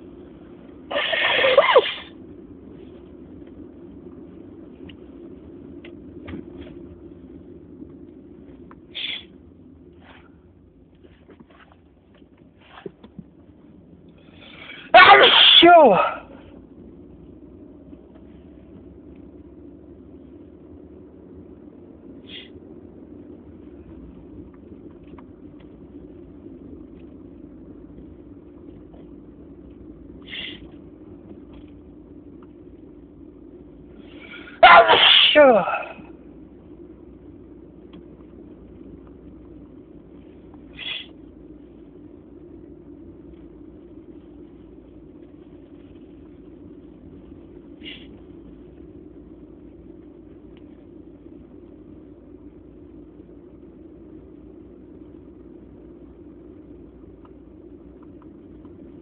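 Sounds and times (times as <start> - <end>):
low background rumble: 0.0 - 59.0
person sniffing: 8.9 - 9.3.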